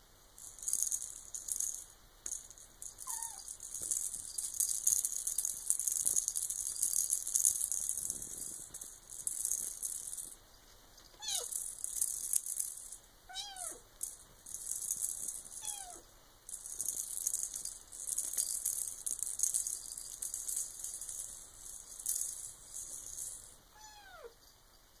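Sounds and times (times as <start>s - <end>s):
toy rattling: 0.4s - 10.4s, 11.0s - 24.6s
kitten meowing: 11.2s - 11.5s, 13.3s - 13.8s, 15.6s - 16.0s, 23.8s - 24.4s.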